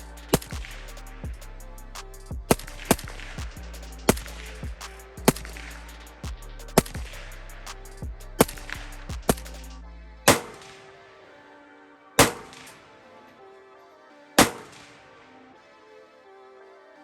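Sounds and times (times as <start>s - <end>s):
background music: 0.0s - 17.0s
rifle shots with ringing tail: 6.8s - 7.1s, 10.3s - 10.8s, 12.2s - 12.8s, 14.4s - 14.9s.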